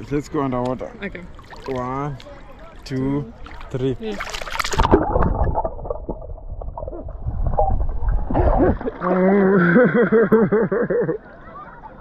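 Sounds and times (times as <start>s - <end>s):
underwater sloshing and gurgling: 0.9s - 9.7s.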